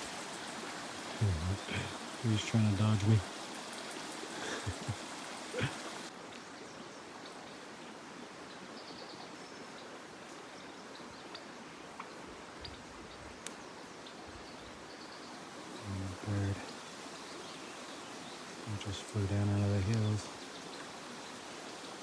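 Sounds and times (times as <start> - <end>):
creek rushing: 0.0 - 6.4, 15.4 - 22.0
small ticks: 13.4 - 13.6.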